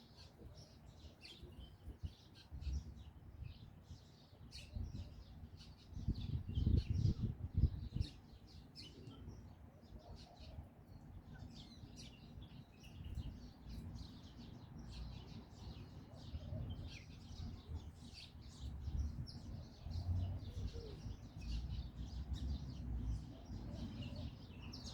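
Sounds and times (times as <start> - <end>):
small birds chirping: 0.0 - 24.9.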